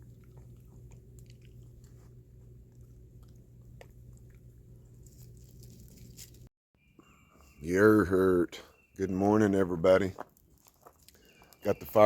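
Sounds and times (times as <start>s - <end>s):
dog chewing: 0.0s - 6.2s
low hum: 0.0s - 9.8s.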